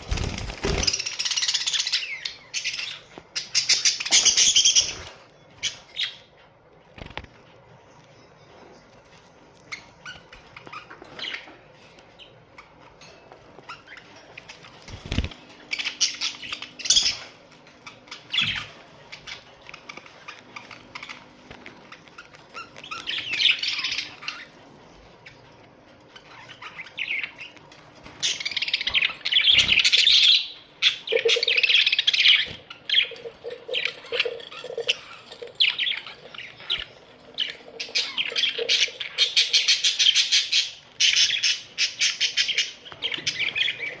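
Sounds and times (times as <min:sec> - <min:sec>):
budgerigars chattering and warbling: 0:28.2 - 0:44.0.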